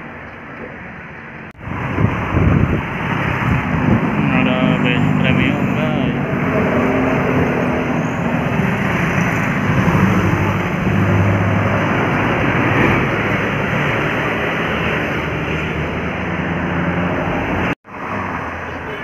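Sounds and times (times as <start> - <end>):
bus passing: 0.0 - 19.0.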